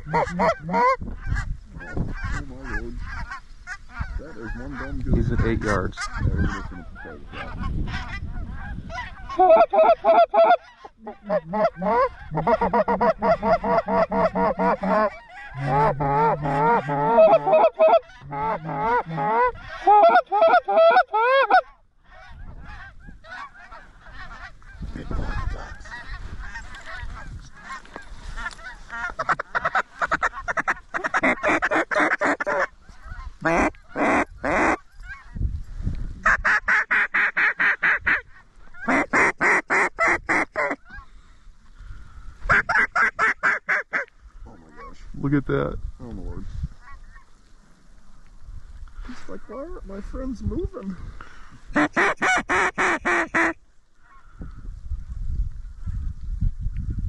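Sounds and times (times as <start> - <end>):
goose honking: 0.0 - 35.4, 36.2 - 41.2, 51.7 - 54.2.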